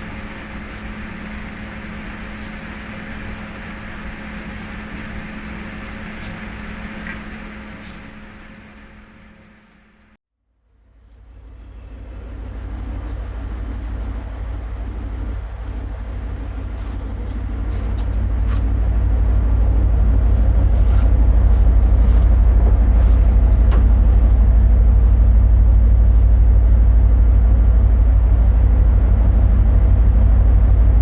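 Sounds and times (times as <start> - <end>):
vehicle rumbling in motion: 0.0 - 31.0.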